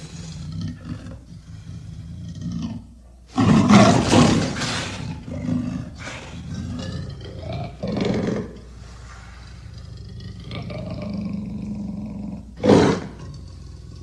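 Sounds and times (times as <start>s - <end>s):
leopard harsh calls: 3.3s - 8.8s, 12.4s - 13.3s.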